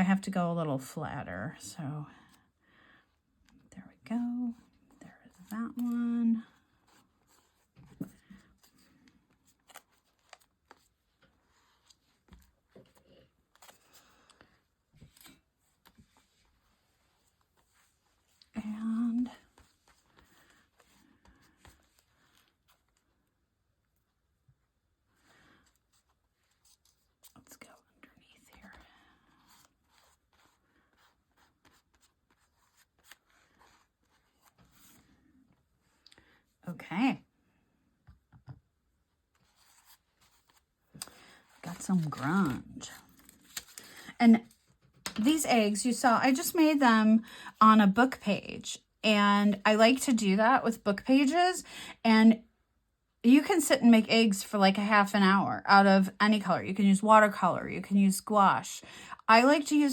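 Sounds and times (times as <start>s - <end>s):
paper rustling: 5.4s - 23.1s, 28.5s - 35.3s, 39.3s - 45.2s.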